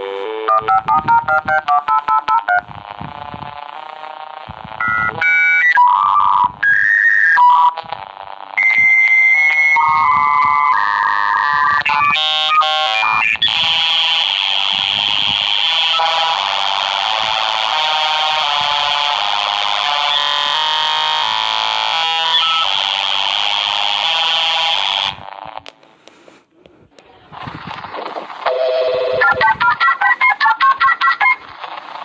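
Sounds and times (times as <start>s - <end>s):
modem hissing static: 0.0s - 26.5s, 27.3s - 32.0s
dial-up modem beeps and tones: 0.2s - 2.7s, 4.8s - 13.6s, 22.3s - 23.2s, 28.5s - 31.4s.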